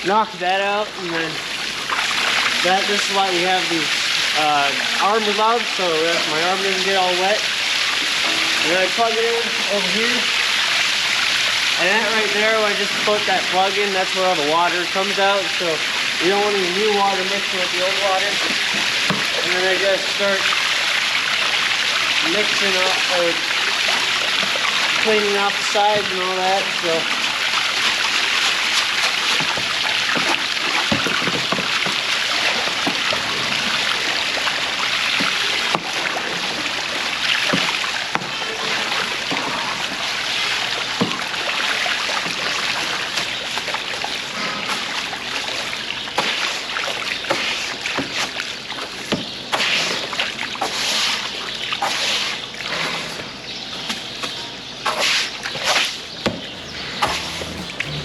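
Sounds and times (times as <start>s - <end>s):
brush scrubbing trough: 56.5s - 58.0s.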